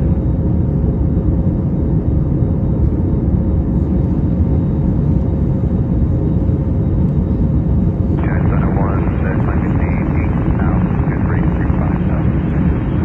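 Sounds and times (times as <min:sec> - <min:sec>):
airplane cabin engine rumble: 0:00.0 - 0:13.0
faint steady hum: 0:08.1 - 0:13.0.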